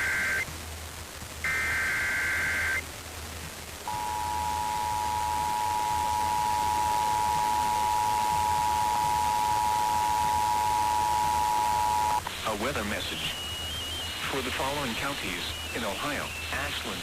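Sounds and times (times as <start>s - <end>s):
low hum: 0.0s - 17.0s
radio static hiss: 0.0s - 17.0s
two-tone alert signal: 1.5s - 2.8s, 3.9s - 12.2s.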